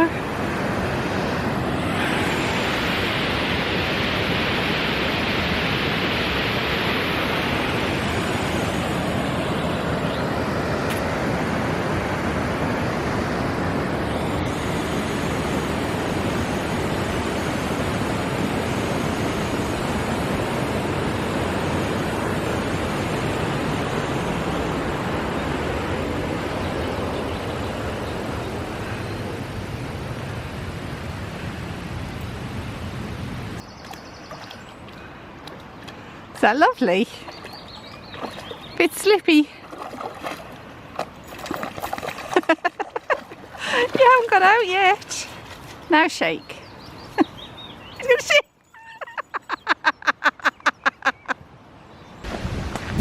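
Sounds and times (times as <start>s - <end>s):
waterfall rushing: 0.0s - 33.6s, 43.5s - 44.8s.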